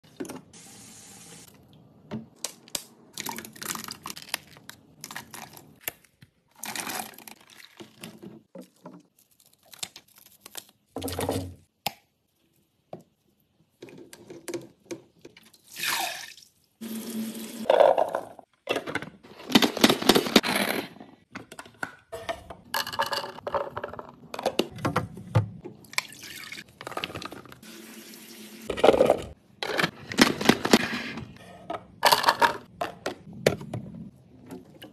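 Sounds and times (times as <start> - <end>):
kitchen clatters and rustles: 6.6 - 9.4, 17.6 - 25.8, 26.6 - 27.6, 28.6 - 34.9.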